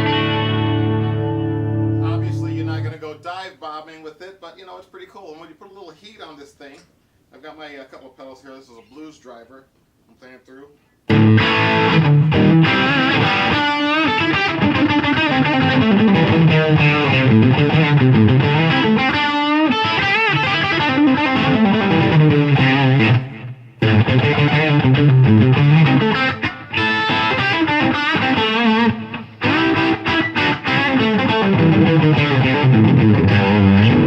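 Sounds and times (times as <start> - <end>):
distorted electric guitar: 0.0 - 2.9, 11.1 - 34.0.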